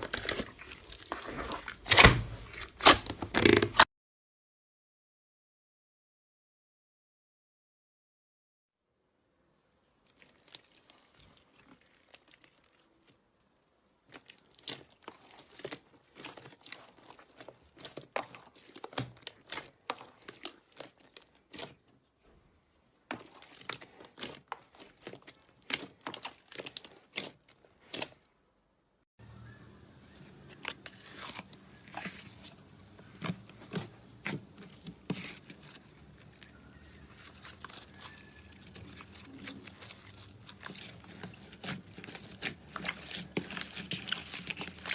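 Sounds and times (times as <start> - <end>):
slime crackling and popping: 30.6 - 44.9.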